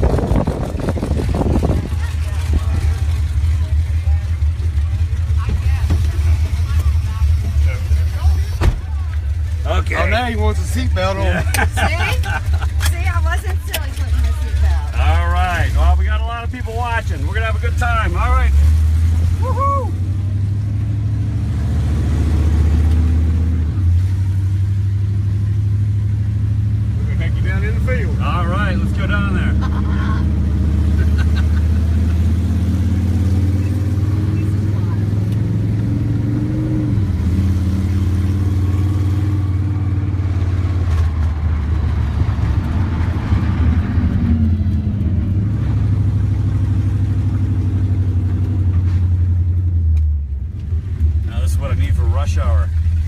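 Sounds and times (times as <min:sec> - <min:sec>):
truck engine droning under load: 0:00.0 - 0:53.0.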